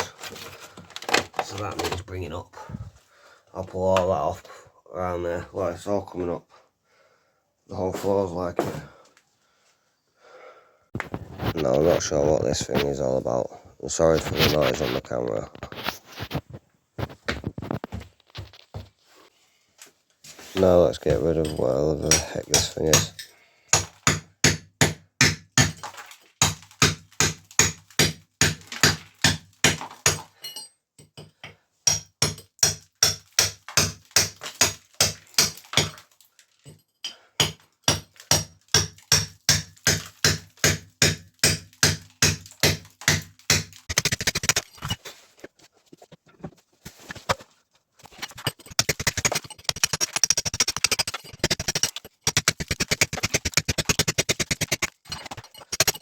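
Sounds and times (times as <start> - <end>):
scraping: 43.8 - 56.0.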